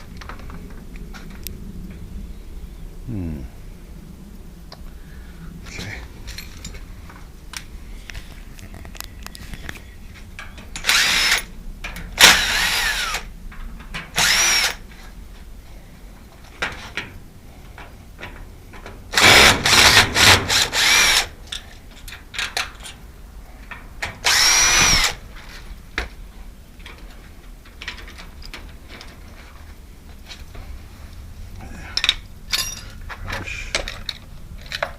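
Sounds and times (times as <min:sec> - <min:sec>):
cordless drill running: 0:10.8 - 0:11.5, 0:12.2 - 0:13.3, 0:14.2 - 0:14.8, 0:19.2 - 0:21.3, 0:24.2 - 0:25.2.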